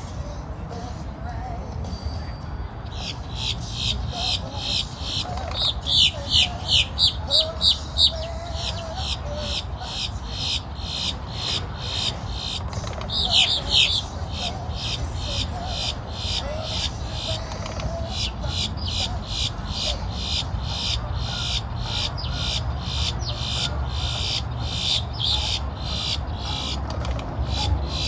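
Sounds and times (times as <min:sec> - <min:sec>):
birds chirping: 0:02.6 - 0:28.0.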